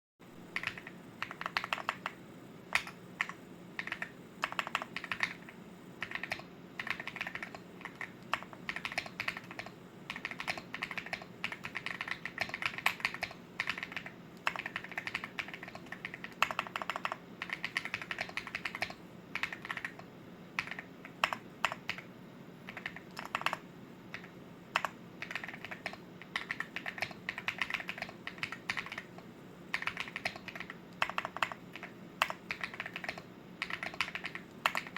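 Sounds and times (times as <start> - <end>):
mechanical keyboard typing: 0.6 - 20.0, 20.6 - 22.1, 22.7 - 34.9.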